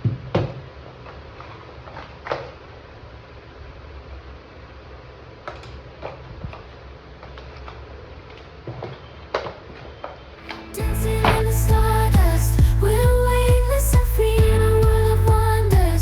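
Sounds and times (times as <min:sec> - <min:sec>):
steady low hum: 0:10.6 - 0:16.0.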